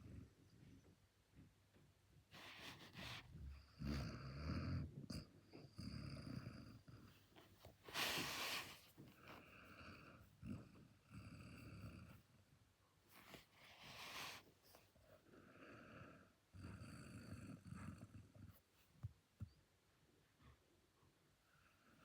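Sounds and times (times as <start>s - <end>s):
dog snoring: 2.3s - 7.2s, 7.9s - 12.4s, 15.3s - 18.6s.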